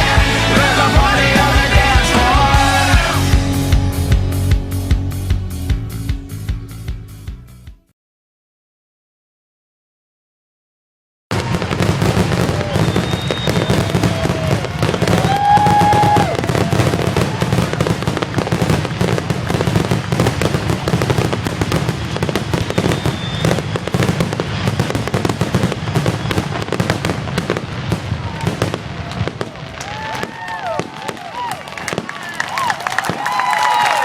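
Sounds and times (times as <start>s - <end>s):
fireworks crackling and banging: 11.3s - 34.0s.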